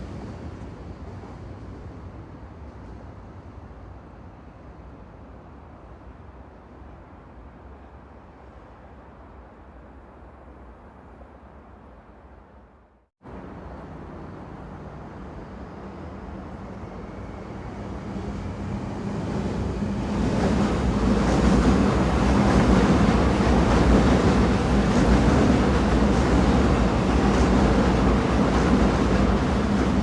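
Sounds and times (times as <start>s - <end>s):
train rumbling: 0.0s - 9.6s, 10.8s - 30.0s.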